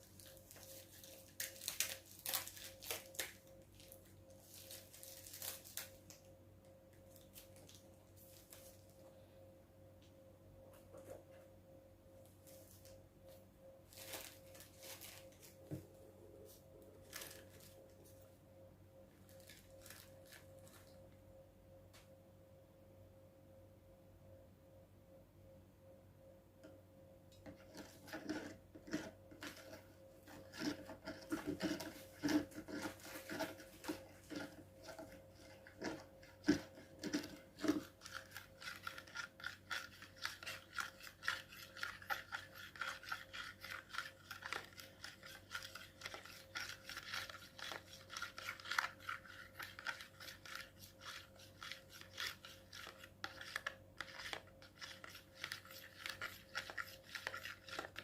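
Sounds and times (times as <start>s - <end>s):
faint steady hum: 0.0s - 58.0s
small clicks and scrapes: 27.4s - 58.0s
slime rubbing and scraping: 27.6s - 58.0s.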